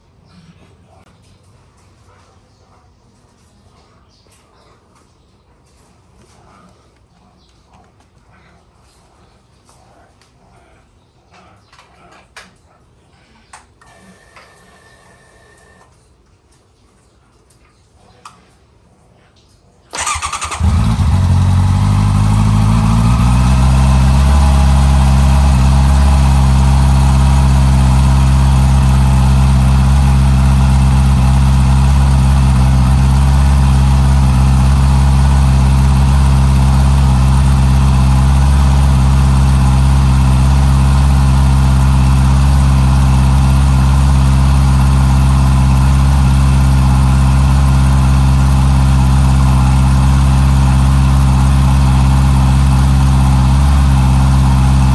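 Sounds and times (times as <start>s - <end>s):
motorcycle engine idling: 19.9s - 54.9s.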